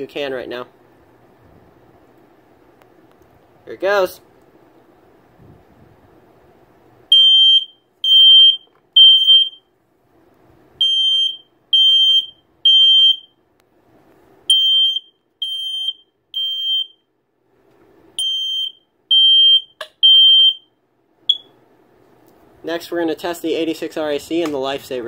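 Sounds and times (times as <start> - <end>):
smoke alarm beeps: 7.1 - 9.7, 10.8 - 13.4, 14.5 - 17.1, 18.2 - 21.6.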